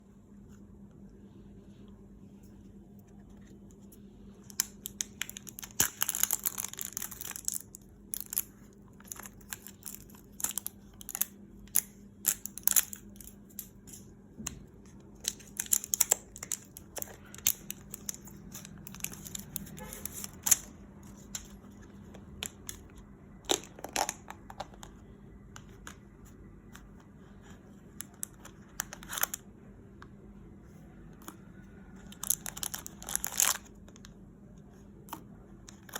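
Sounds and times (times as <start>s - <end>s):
faint steady hum: 0.0s - 35.9s
packaging crinkling and tearing: 4.5s - 11.2s, 15.2s - 21.5s, 32.1s - 33.8s.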